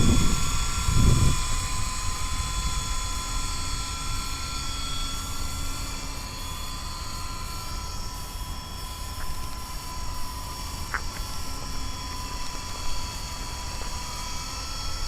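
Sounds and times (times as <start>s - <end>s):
wind buffeting microphone: 0.0s - 3.3s
helicopter rotor high whine: 0.0s - 15.0s.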